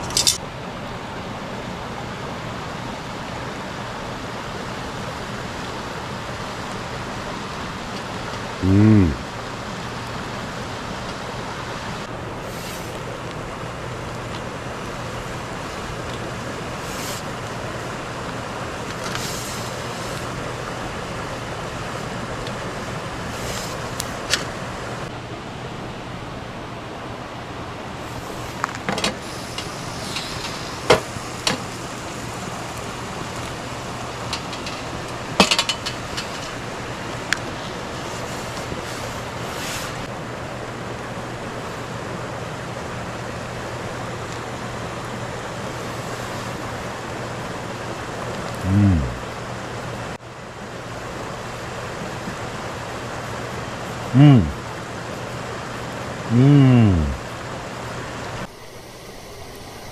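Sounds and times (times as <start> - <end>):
campfire burning with hiss: 0.0 - 26.1, 27.3 - 59.9.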